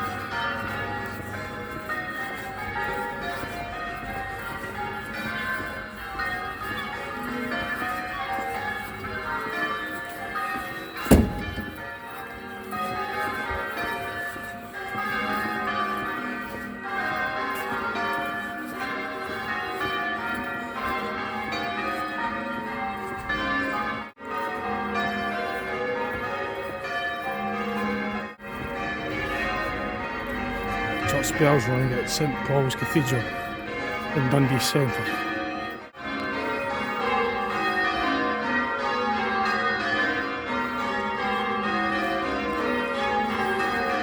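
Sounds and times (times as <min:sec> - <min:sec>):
church bells ringing: 0:00.0 - 0:44.0
sharp thump: 0:11.1 - 0:11.9.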